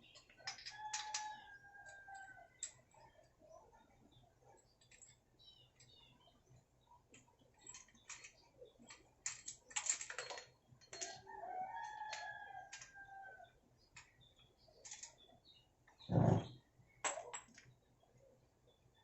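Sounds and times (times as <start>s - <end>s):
rooster crowing: 0.7s - 2.5s.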